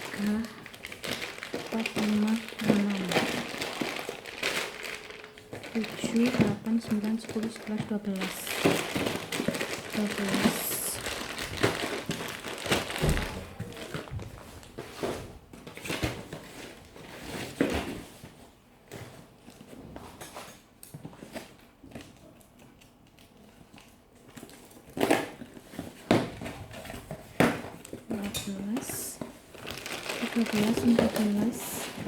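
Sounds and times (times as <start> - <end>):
plastic packaging crinkling: 0.0 - 17.7, 21.2 - 32.0.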